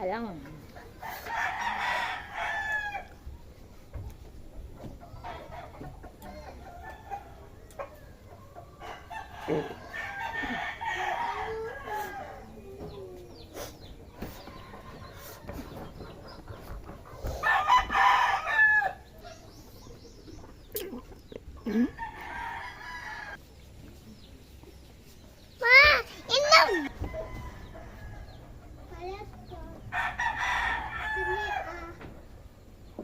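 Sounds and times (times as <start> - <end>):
rooster crowing: 1.0 - 3.2, 8.8 - 12.7, 17.4 - 19.1, 21.7 - 23.4, 26.5 - 28.5, 29.9 - 31.9.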